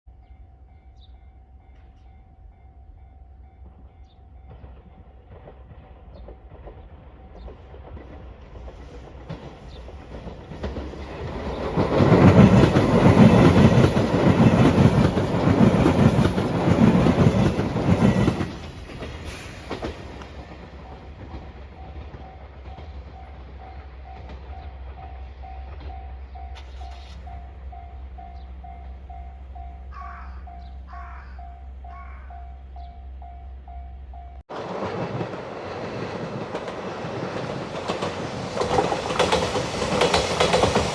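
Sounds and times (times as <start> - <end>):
train wheels clacking over joints: 4.5 - 27.3, 34.5 - 40.9
level-crossing bell dinging: 21.8 - 34.5.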